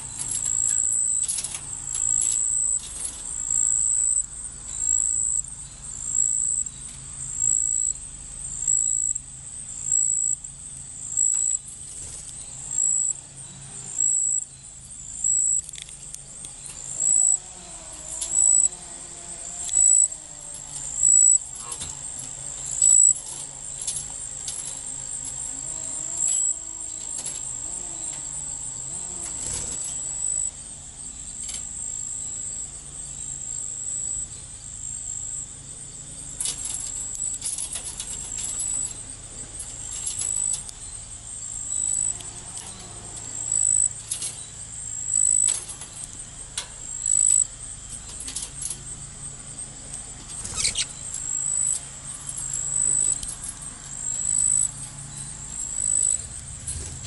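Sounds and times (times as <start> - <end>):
budgerigars trilling and chirping: 50.4 - 51.5.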